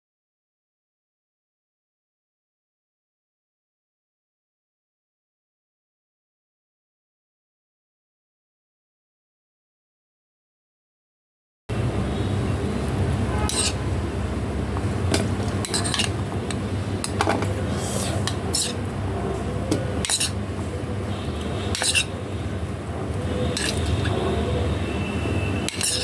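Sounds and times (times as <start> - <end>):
steady low hum: 11.7 - 26.0
metal utensil stirring in a pot: 13.4 - 13.9, 15.1 - 18.9, 19.9 - 20.6, 21.3 - 22.2, 23.5 - 24.2, 25.6 - 26.0.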